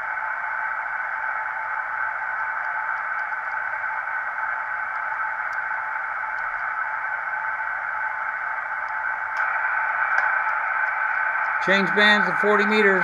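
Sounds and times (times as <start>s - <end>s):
radio receiver static hiss: 0.6s - 13.0s.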